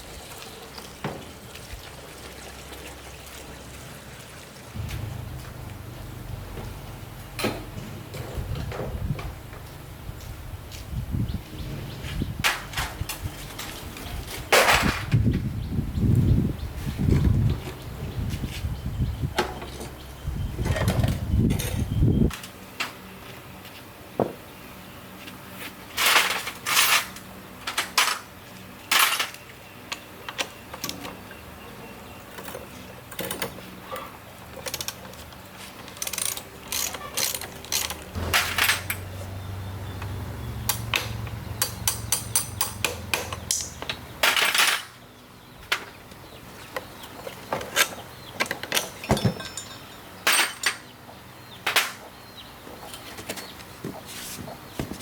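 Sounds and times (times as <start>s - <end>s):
low steady hum: 4.8s - 9.3s
hand tools clinking on metal: 26.0s - 28.3s, 28.9s - 29.5s, 32.3s - 39.4s, 40.6s - 45.0s, 47.0s - 51.0s.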